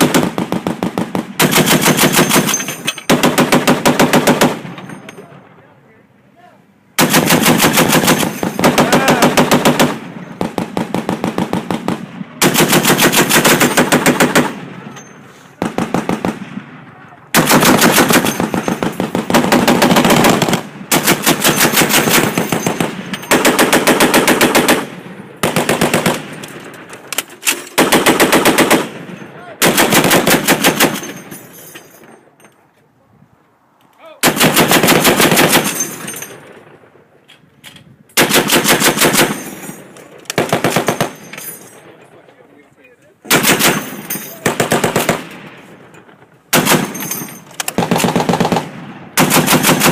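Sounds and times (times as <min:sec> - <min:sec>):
heavy machine gun bursts: 0:01.4 - 0:04.9, 0:17.3 - 0:26.3, 0:43.3 - 0:45.3.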